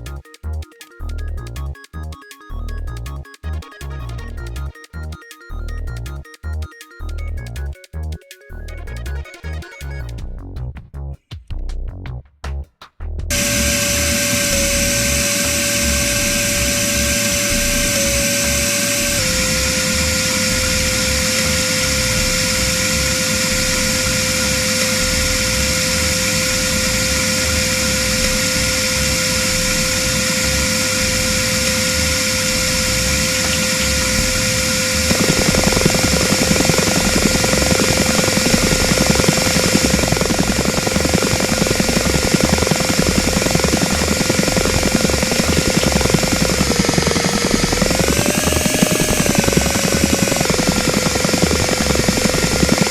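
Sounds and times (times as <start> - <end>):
synthesized helicopter hovering: 0.0 - 10.3, 13.3 - 52.9
thick noisy layer: 13.3 - 52.9.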